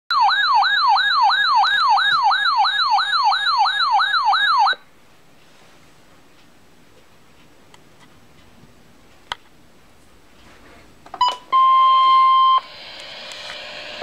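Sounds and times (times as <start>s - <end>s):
electronic siren wailing: 0.1s - 4.8s.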